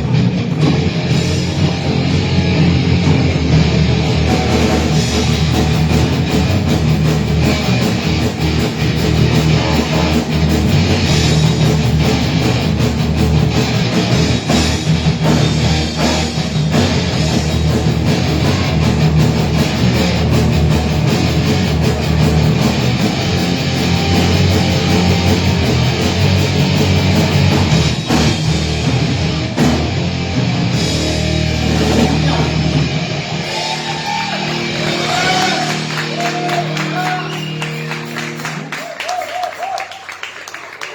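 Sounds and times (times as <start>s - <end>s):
rock band playing live: 0.0s - 40.3s.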